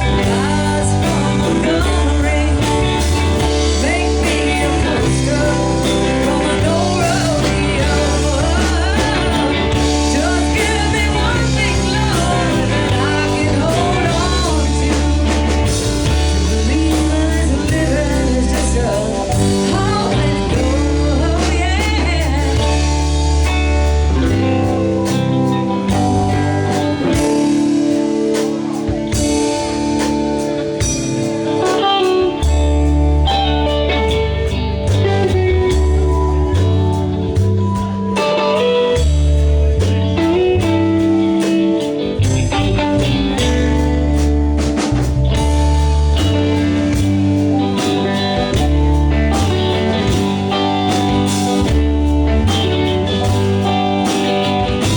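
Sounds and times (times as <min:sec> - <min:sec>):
person singing: 0:00.0 - 0:29.6
bass line: 0:00.0 - 0:54.9
drum kit: 0:00.0 - 0:54.9
electric guitar: 0:00.0 - 0:54.9.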